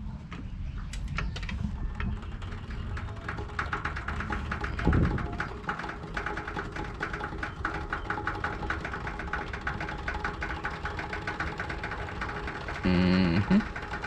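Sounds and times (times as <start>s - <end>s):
fast mechanical clicking: 0.9s - 14.0s
faint steady hum: 12.2s - 14.0s.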